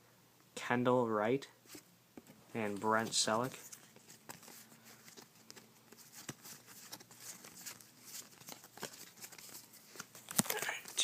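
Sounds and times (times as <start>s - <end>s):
trading cards tapping and rustling: 2.2s - 11.0s.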